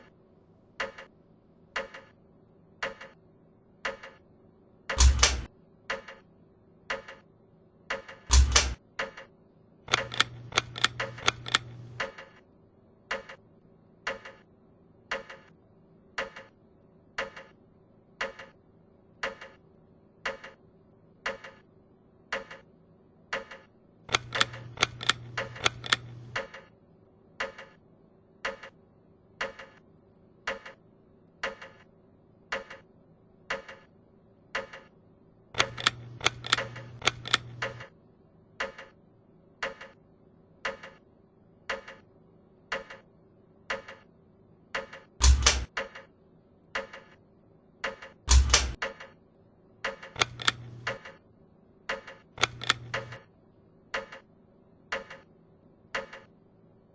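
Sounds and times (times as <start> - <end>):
ceiling fan ticking: 0.0 - 46.0
rapid clicking: 9.9 - 12.4, 23.3 - 26.7, 35.6 - 38.0, 49.8 - 51.2, 51.9 - 53.3.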